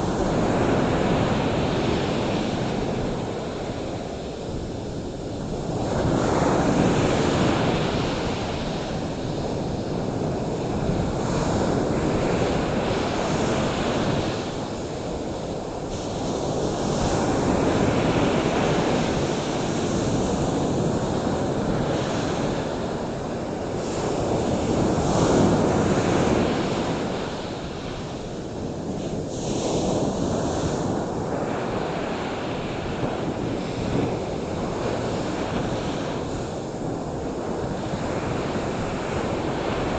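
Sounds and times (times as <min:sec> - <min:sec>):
ocean surf washing ashore: 0:00.0 - 0:39.9.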